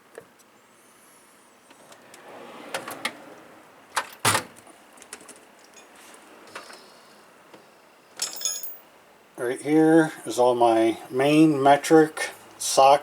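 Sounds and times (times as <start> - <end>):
metal drawers sliding: 1.8 - 4.6
drawer closing clunk: 2.0 - 3.4, 4.0 - 4.6.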